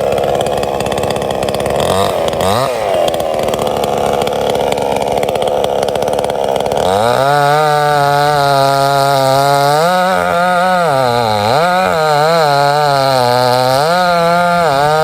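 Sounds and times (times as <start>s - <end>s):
chainsaw cutting timber: 0.0s - 15.0s.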